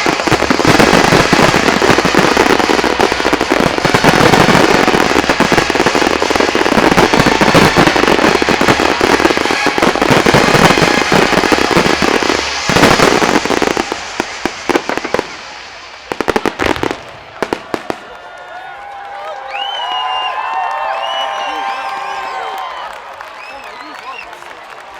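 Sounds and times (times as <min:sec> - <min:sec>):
fireworks shell bursts and crackling: 0:00.0 - 0:17.9.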